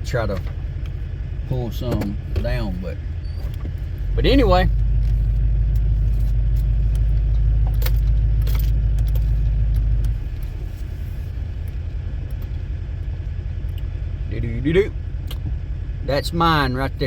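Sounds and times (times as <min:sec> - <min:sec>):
diesel engine and road rumble: 0:00.0 - 0:17.0.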